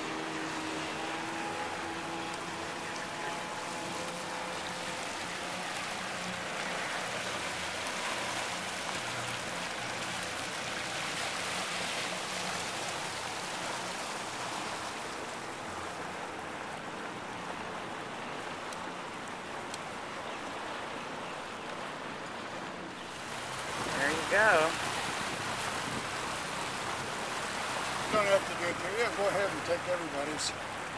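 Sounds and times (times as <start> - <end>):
low motor hum: 0.0 - 20.6
water and wind rushing: 0.0 - 30.9.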